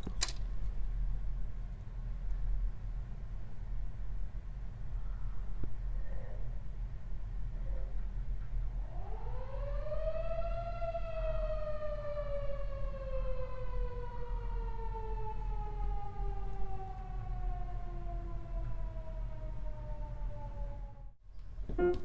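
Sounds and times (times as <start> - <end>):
siren wailing: 8.8 - 21.2.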